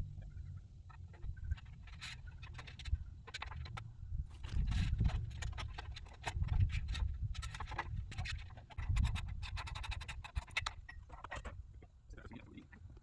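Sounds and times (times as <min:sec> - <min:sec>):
low uneven rumble: 0:00.0 - 0:05.6.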